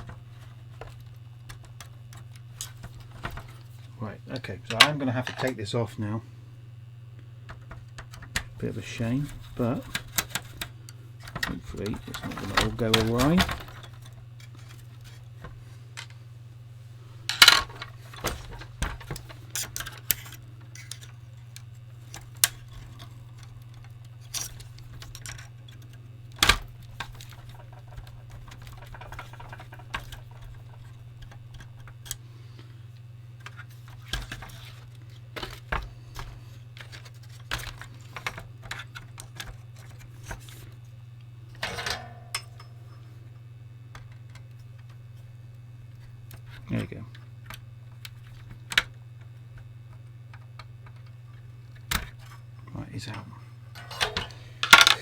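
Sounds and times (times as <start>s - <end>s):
steady low hum: 0.0s - 55.0s
hand tools clicking and clinking: 41.6s - 42.8s, 53.8s - 55.0s.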